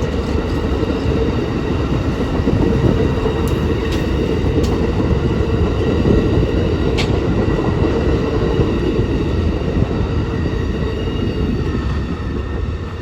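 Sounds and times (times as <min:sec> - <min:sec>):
passenger train rumbling past: 0:00.0 - 0:13.0.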